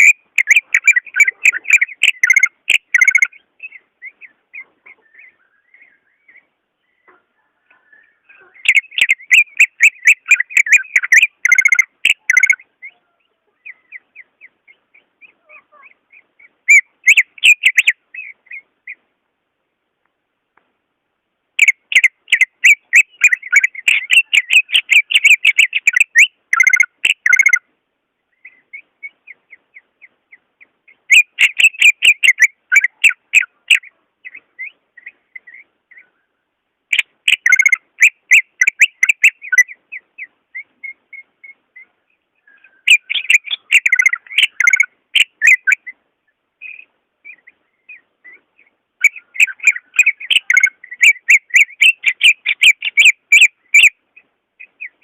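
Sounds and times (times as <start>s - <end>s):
bird singing high whistled notes: 0.0s - 4.4s, 7.8s - 14.3s, 16.4s - 18.6s, 21.6s - 27.6s, 36.9s - 46.0s, 49.0s - 54.0s.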